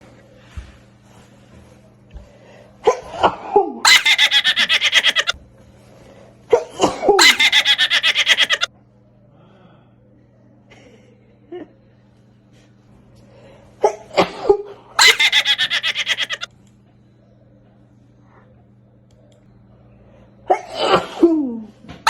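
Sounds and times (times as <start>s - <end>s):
person sneezing: 20.5s - 21.4s.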